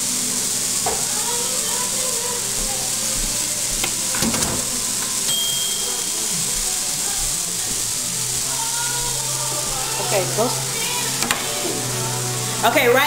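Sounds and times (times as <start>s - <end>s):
chicken sizzling on a grill: 0.0s - 13.0s
handling clicks and knocks: 3.8s - 5.4s.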